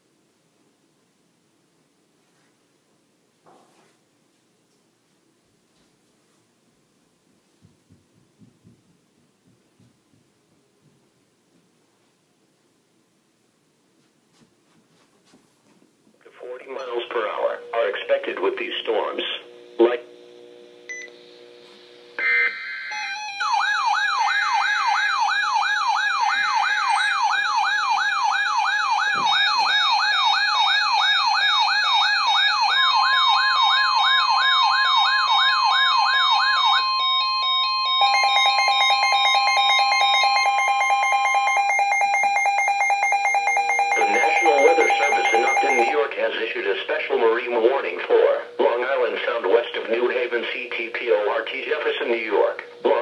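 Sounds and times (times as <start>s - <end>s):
warbling siren tone: 22.2s - 46.0s
rapid even beeping: 36.8s - 46.0s
steady alert tone: 43.3s - 46.0s.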